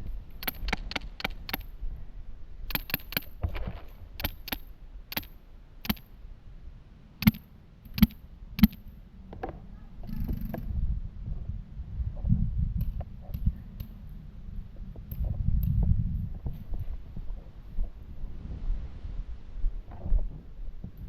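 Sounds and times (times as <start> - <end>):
paintball markers firing: 0.4 - 1.7, 2.7 - 3.4, 4.2 - 6.1, 7.2 - 8.9.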